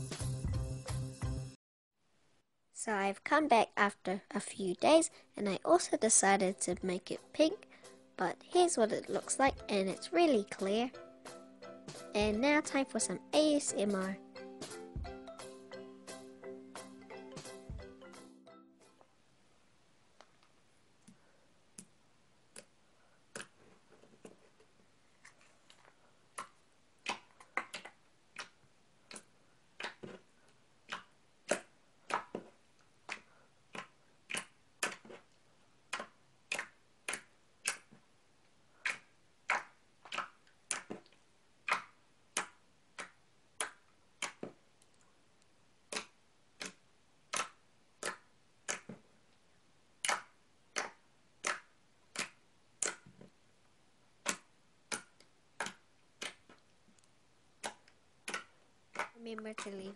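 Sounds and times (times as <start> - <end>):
slime wet clicks and pops: 33.1 - 35.1, 35.9 - 37.9, 38.8 - 41.0, 41.6 - 44.4, 45.9 - 48.9, 50.0 - 53.0, 57.6 - 59.8.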